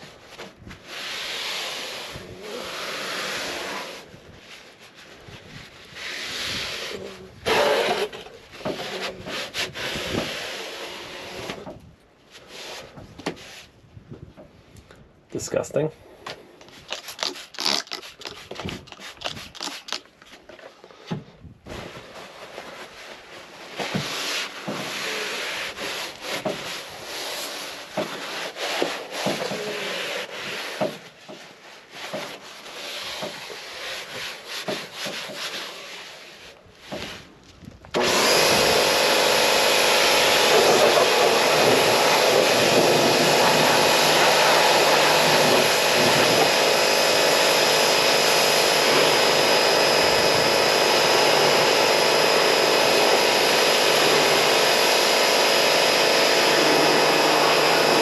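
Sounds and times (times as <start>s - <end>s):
loud steady machine noise: 38.0s - 58.0s.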